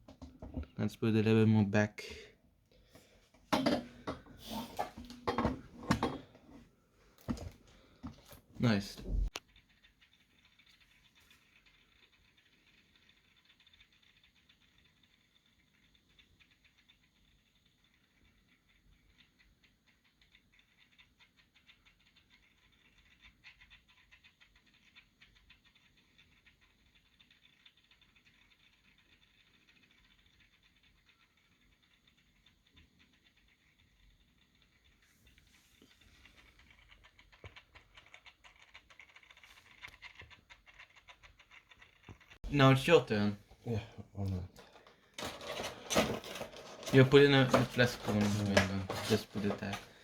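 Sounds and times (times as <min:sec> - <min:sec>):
packaging clicks and rustling: 0:44.5 - 0:50.0.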